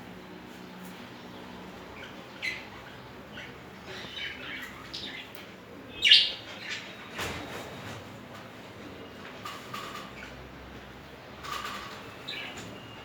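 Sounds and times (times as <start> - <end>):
budgerigars chirping: 5.9 - 6.8.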